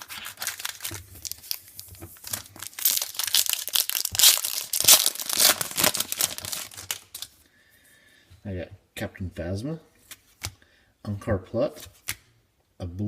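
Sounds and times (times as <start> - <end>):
wrapper being torn and crinkled: 0.0 - 7.4.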